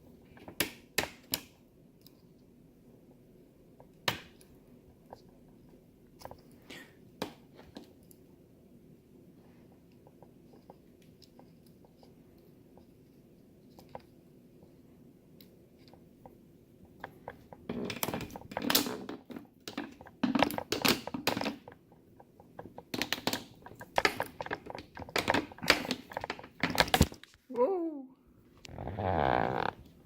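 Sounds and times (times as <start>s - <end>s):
small hard parts handled by hand: 15.3s - 27.4s.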